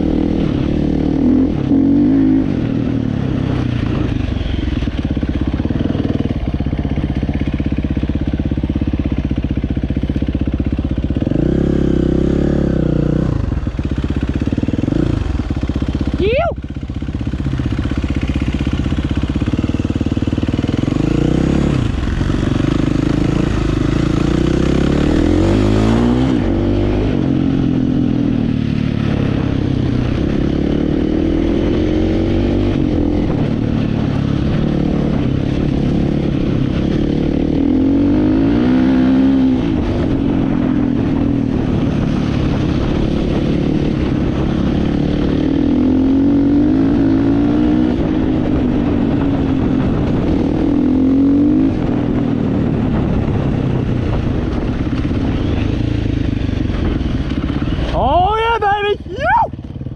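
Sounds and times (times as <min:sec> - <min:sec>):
dirt bike engine revving: 0:17.3 - 0:48.8.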